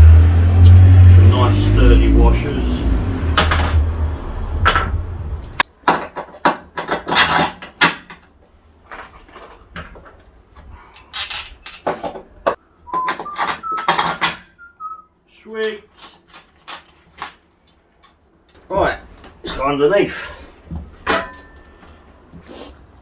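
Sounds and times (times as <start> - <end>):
steel bolts and washers clinking: 0.0 - 2.0, 2.6 - 5.0, 11.0 - 12.2, 21.1 - 21.7
low rumble: 0.0 - 5.6.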